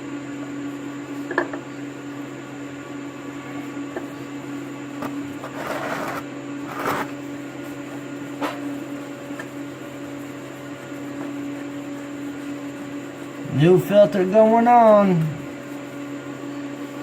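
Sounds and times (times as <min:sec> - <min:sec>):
steady electrical hum: 0:00.0 - 0:17.0
scraping rustles: 0:05.0 - 0:13.4.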